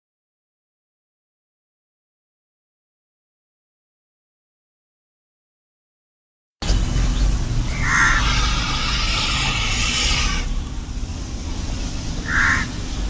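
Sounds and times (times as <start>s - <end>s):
bird cawing: 7.7s - 10.6s, 12.2s - 12.8s
hiss: 7.8s - 13.0s.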